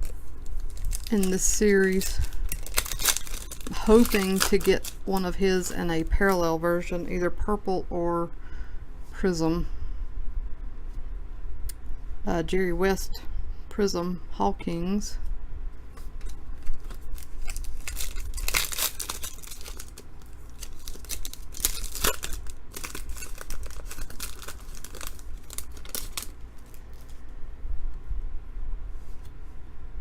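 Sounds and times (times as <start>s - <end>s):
card wrappers tearing and crinkling: 0.0s - 5.9s, 16.2s - 27.2s.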